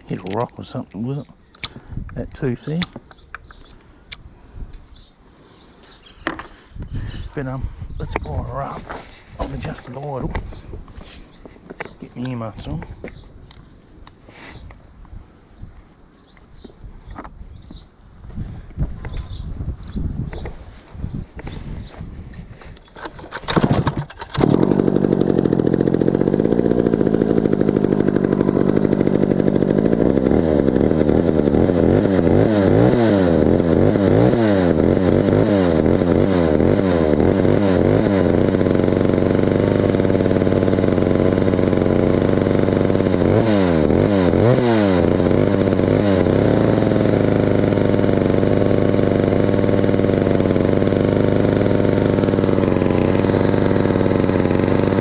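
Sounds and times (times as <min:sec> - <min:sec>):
chainsaw pull start rattle: 0:22.6 - 0:55.0
chainsaw idling and revving: 0:23.0 - 0:55.0.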